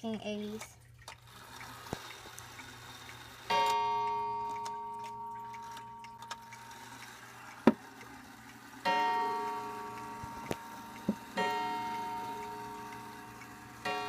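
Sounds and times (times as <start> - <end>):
clock ticking: 0.0 - 14.0
clock striking on bell: 3.5 - 6.8, 8.8 - 14.0.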